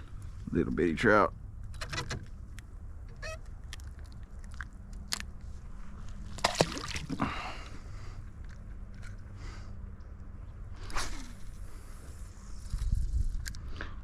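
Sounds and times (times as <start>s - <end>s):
steady low rumble: 0.0s - 14.0s
squeaky scrape: 3.1s - 3.5s.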